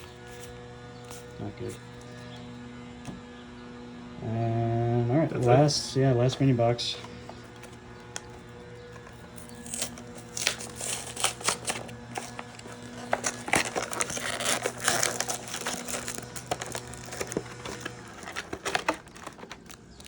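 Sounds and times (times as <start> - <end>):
foil packs rustling: 0.0 - 2.4, 5.2 - 20.0
plastic packaging crinkling: 7.0 - 20.0.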